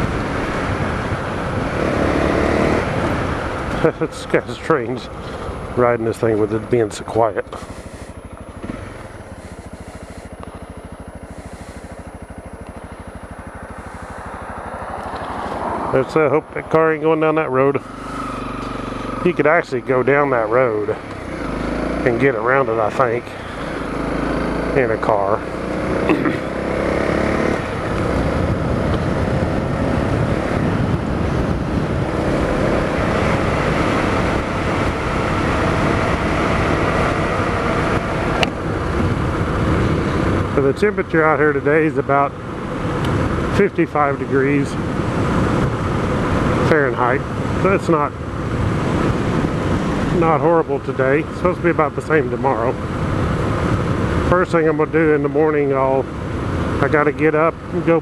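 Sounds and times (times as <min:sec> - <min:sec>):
motorcycle engine chugging: 0:00.0 - 0:58.0
wind buffeting microphone: 0:26.6 - 0:41.0, 0:44.2 - 0:50.9, 0:51.9 - 0:54.3.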